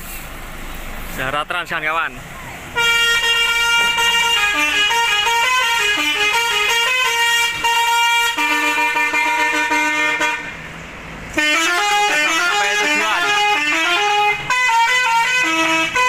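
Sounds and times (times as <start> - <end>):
multi-tone musical air horn: 2.8 - 10.6, 11.3 - 16.0.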